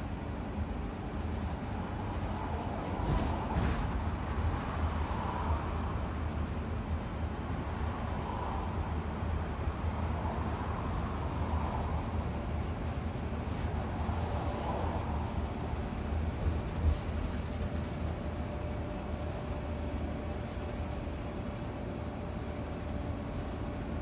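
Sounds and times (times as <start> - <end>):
bus engine and road rumble: 0.0 - 24.0.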